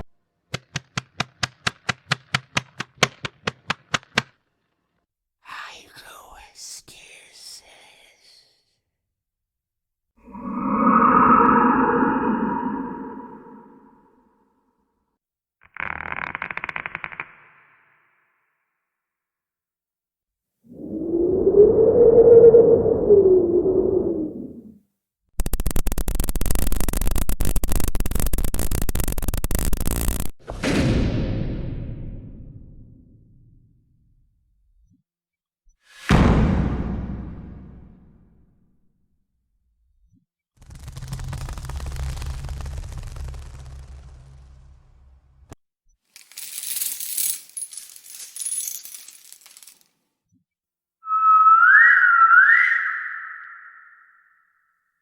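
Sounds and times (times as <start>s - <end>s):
high wavering cry-like tone: 10.2s - 14.2s, 51.0s - 54.4s
harsh crackling static noise: 25.4s - 30.4s, 40.6s - 45.4s.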